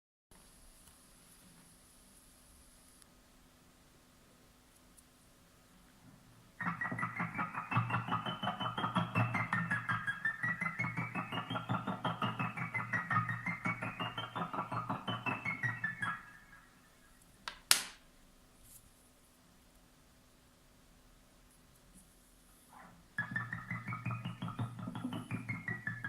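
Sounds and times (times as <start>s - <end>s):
electronic keyboard fast run: 6.6s - 17.0s, 23.2s - 26.0s.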